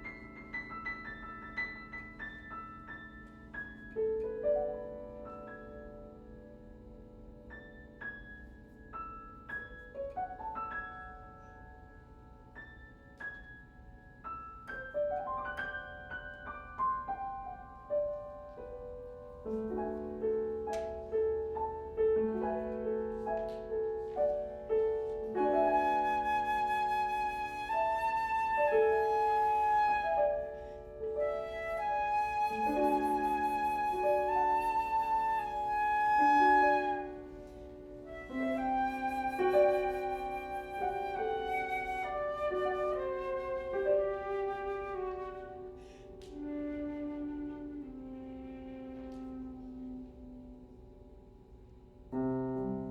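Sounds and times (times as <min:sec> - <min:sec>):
piano playing: 0:00.0 - 0:52.9
flute sustained notes: 0:24.6 - 0:50.8.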